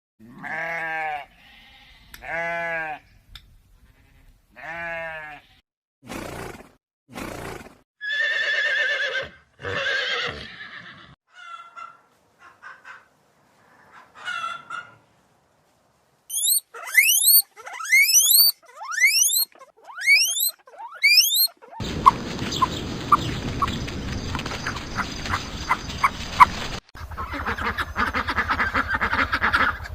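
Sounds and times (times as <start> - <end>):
farm animal calls: 13.7 - 15.1, 16.3 - 23.8, 24.4 - 29.9
quick rising squeaks: 16.3 - 26.8.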